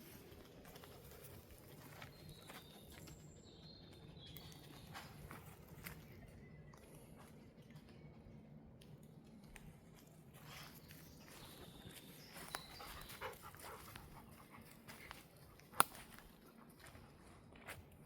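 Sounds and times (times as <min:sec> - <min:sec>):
dog panting: 0:12.7 - 0:14.8.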